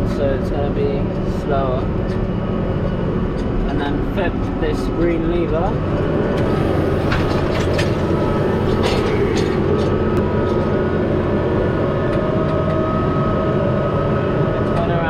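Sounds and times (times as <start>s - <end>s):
hydraulic whine: 5.8s - 15.0s
tractor engine running: 5.9s - 15.0s.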